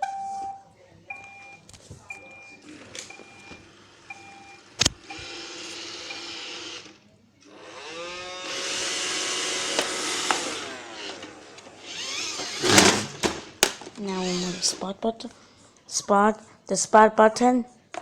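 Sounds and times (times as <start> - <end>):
robot vacuum motors whining: 3.1 - 14.8.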